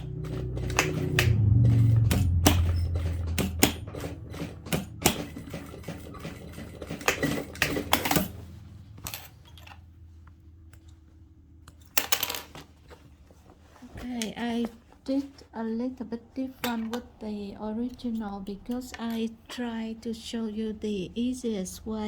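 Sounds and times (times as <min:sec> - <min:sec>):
sewing machine stitching: 0:00.0 - 0:09.8
handling noise: 0:00.0 - 0:15.4.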